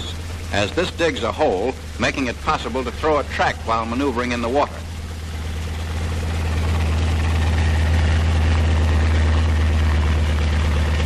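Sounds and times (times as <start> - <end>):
tank engine rumble: 0.0 - 11.0.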